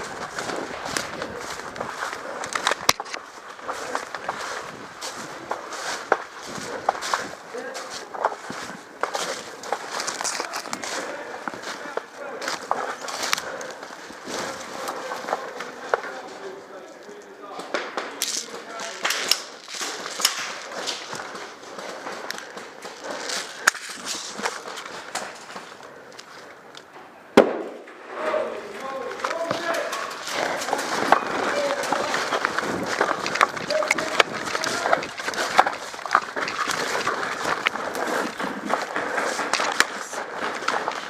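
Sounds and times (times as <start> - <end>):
footsteps through undergrowth: 0.0 - 26.6, 28.8 - 41.0
loud crack: 17.6 - 21.1, 27.4 - 28.2.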